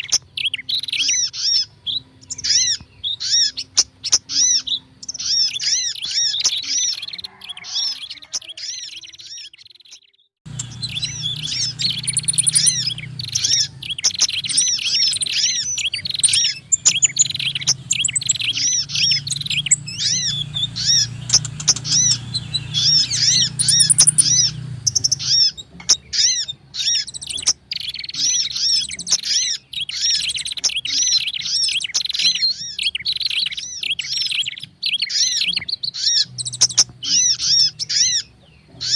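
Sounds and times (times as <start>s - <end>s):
songbirds chirping: 0.0s - 38.9s
low steady hum: 10.5s - 25.6s.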